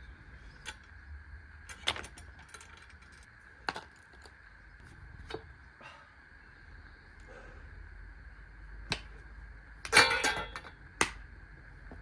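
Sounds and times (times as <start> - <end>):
bicycle chain and tools clinking: 1.7 - 4.4.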